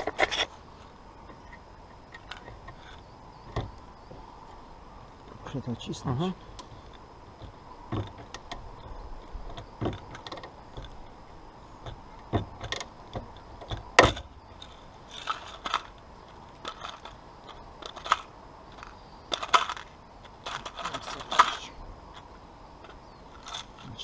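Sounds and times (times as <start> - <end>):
hand tools clicking and knocking: 16.6 - 21.7.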